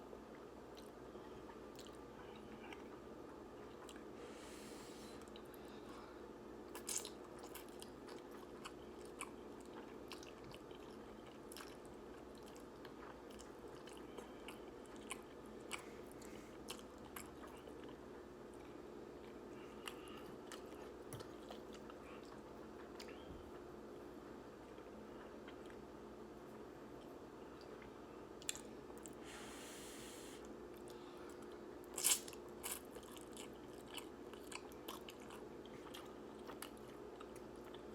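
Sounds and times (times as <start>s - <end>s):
faint steady hum: 0.0s - 37.9s
chewing noodles: 6.7s - 23.2s, 30.7s - 37.9s.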